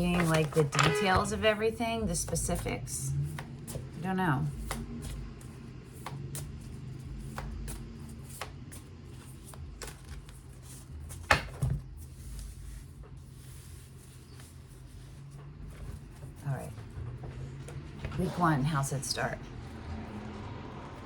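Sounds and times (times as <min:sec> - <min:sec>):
cards being shuffled: 0:00.0 - 0:01.5, 0:03.2 - 0:15.2.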